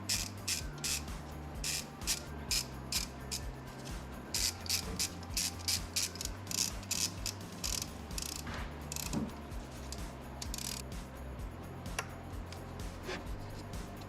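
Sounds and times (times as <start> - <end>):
ratchet wrench clicking: 0.0 - 10.9.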